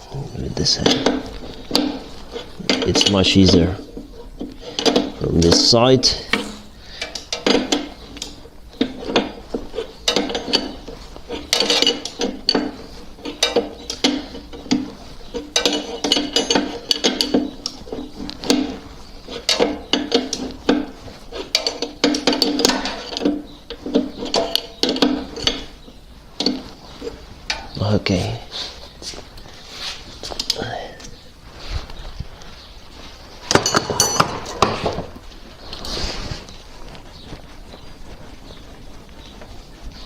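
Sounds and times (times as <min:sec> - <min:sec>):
metal tools clinking: 0:00.6 - 0:25.8, 0:33.4 - 0:35.0.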